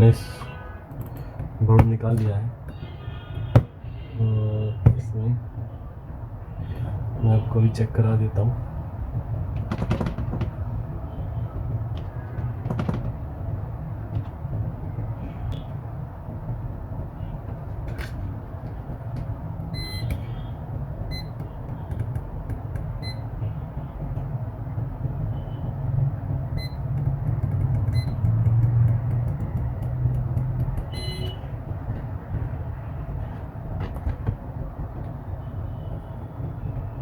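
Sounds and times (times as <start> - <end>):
short electronic beeps: 19.8 - 20.2, 26.6 - 26.8.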